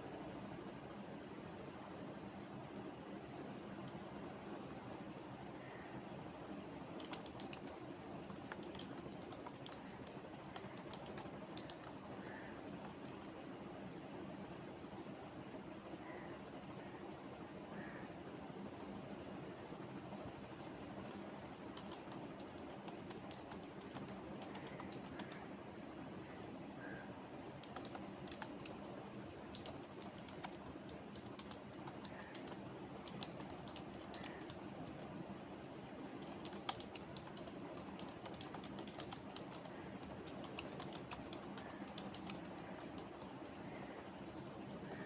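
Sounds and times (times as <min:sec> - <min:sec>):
low background hum: 0:00.0 - 0:45.0
computer keyboard typing: 0:06.9 - 0:12.0, 0:12.8 - 0:13.7, 0:20.9 - 0:25.5, 0:27.6 - 0:35.2, 0:36.1 - 0:43.7.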